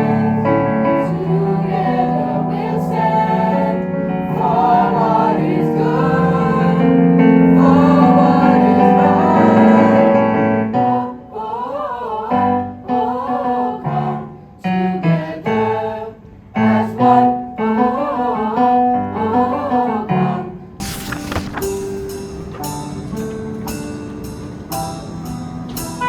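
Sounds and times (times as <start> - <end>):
keyboard accompaniment: 0.0 - 11.0, 20.8 - 26.0
group of voices singing: 0.0 - 21.2.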